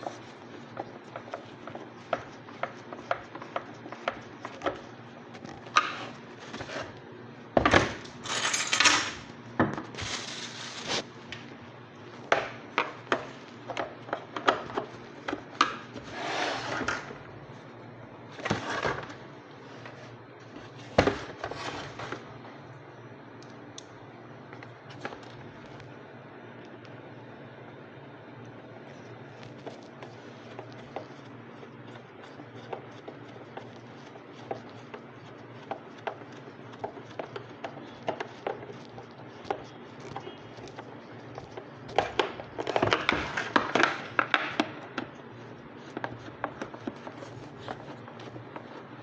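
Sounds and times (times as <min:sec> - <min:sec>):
plastic parts rubbing scrapes: 0:10.0 - 0:11.1, 0:12.9 - 0:17.7, 0:29.0 - 0:49.0.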